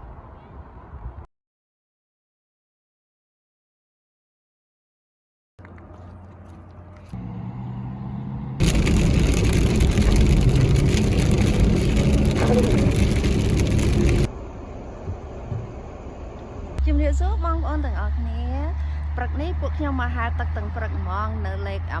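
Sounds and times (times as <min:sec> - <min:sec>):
car road and wind noise: 0:05.6 - 0:22.0.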